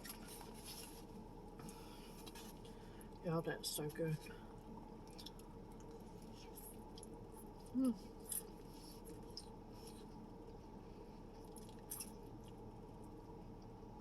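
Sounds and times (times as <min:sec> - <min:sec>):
person chewing: 0:05.0 - 0:10.2, 0:11.4 - 0:12.6
person humming: 0:07.8 - 0:08.0.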